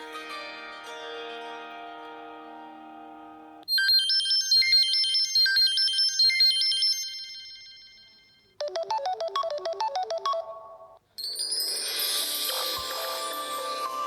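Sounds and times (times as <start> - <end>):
high-pitched repeating ringtone: 3.7 - 14.0.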